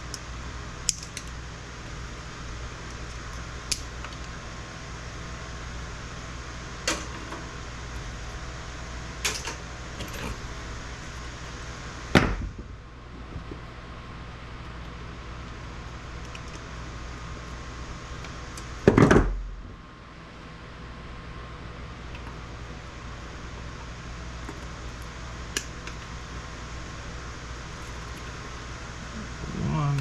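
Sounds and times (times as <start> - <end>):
fan hum: 0.0 - 30.0
sharp clicks of parts pried off: 0.8 - 1.4.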